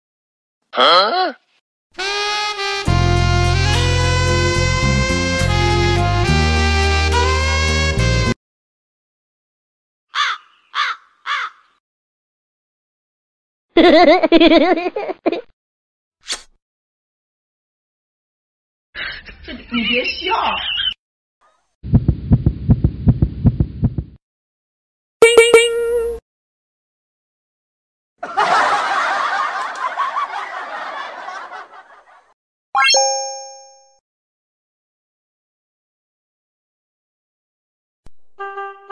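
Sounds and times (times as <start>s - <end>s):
crow cawing: 10.1s - 11.8s
crowd laughing: 28.2s - 32.4s
ringing chime tone: 32.8s - 34.0s.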